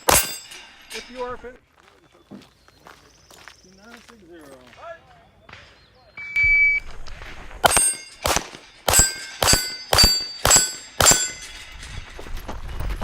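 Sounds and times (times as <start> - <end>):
pistol shots: 0.0 - 0.4, 7.6 - 11.5
steel targets ringing: 0.0 - 1.6, 7.6 - 12.1
electronic timer beep: 6.2 - 6.8.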